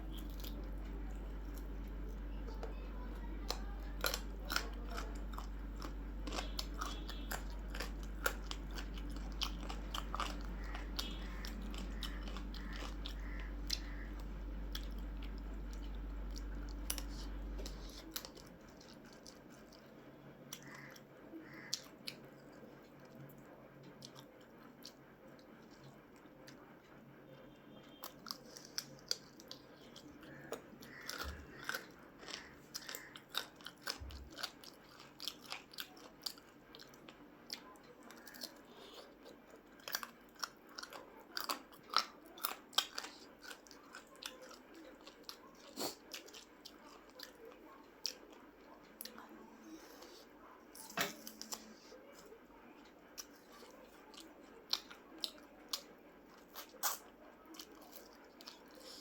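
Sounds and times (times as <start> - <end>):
chewing and eating mouth sounds: 0.0 - 59.0
small food crunches: 3.4 - 19.9, 27.9 - 49.4, 50.8 - 59.0.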